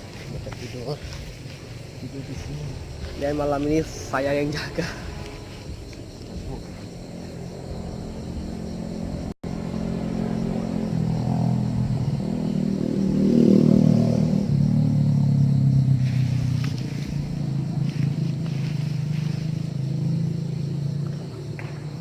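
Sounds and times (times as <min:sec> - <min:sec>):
motor engine running: 0:14.5 - 0:22.0.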